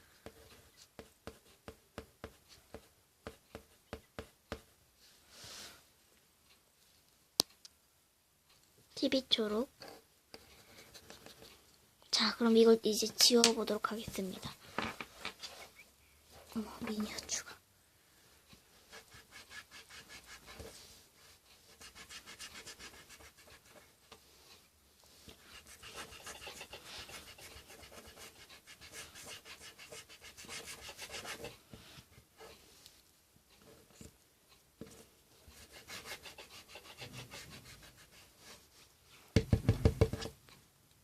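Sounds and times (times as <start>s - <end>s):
eraser scrubbing on paper: 18.9s - 23.8s, 25.4s - 31.6s, 35.5s - 38.6s.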